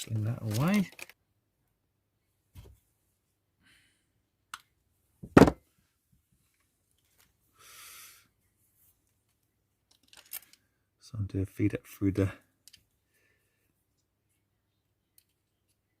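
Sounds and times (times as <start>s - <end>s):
tools knocking on workbench: 5.2s - 5.6s.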